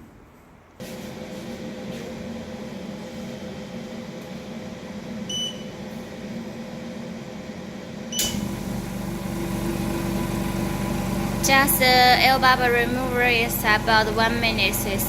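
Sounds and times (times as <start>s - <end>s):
low pump motor: 0.8s - 15.0s
machine humming: 0.8s - 15.0s
short beeps: 5.3s - 5.7s.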